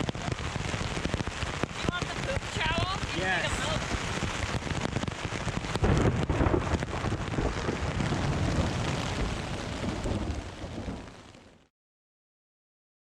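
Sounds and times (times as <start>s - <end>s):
heavy rain on a tent: 0.0s - 11.7s
low rumble of thunder: 3.7s - 11.6s.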